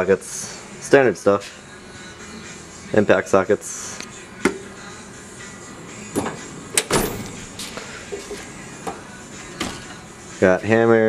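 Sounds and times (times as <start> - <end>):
metal drawers sliding on runners: 6.1 - 10.1
drawers knocking shut: 6.2 - 8.3.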